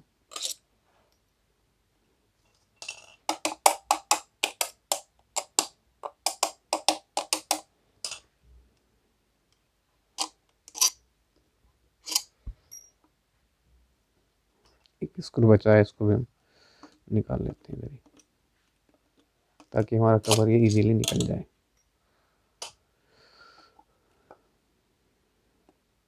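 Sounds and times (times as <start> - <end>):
metal tool clicking on screw: 0.3 - 0.6, 2.8 - 8.2, 10.2 - 11.0, 12.0 - 13.0, 20.2 - 21.4.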